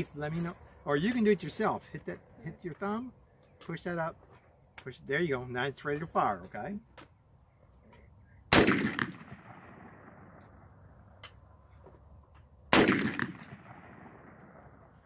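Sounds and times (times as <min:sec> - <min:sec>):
handgun shots: 0:08.5 - 0:09.4, 0:12.7 - 0:14.2.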